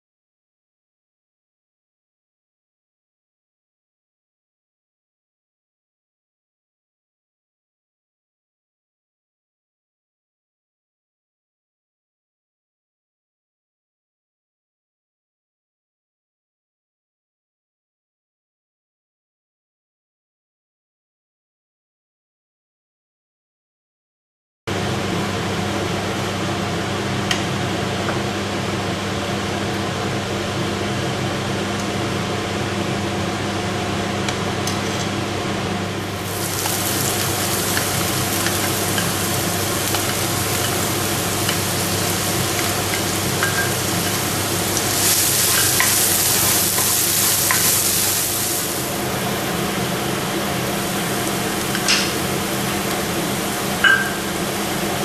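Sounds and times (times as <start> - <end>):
food sizzling in a pan: 36.0 - 55.0.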